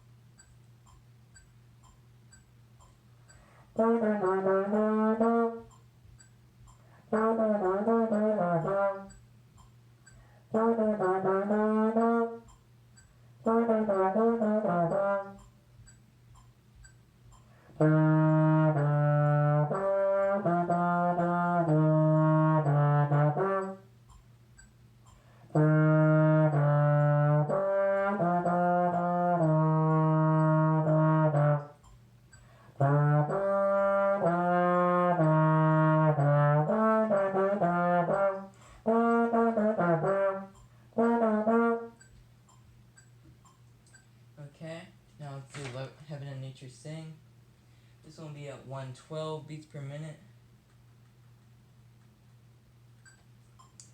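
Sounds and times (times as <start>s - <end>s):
solo trombone playing: 3.7s - 5.7s, 7.0s - 9.2s, 10.5s - 12.6s, 13.4s - 15.5s, 17.6s - 23.9s, 25.5s - 31.9s, 32.8s - 42.0s.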